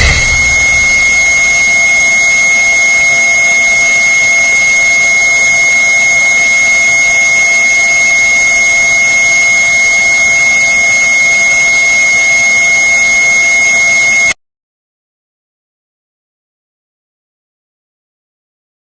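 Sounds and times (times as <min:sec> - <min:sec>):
high-pitched electronic tone: 0:00.0 - 0:02.3
loud hiss: 0:00.0 - 0:02.4.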